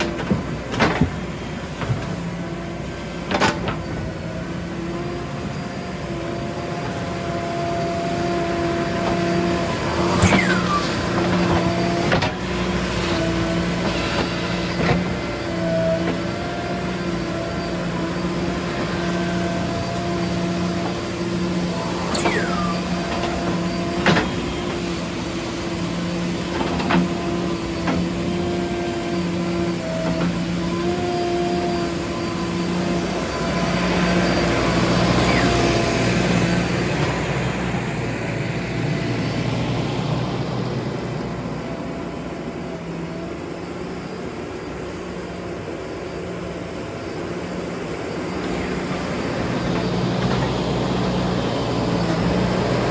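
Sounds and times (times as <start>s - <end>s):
diesel engine running: 0.0s - 52.9s.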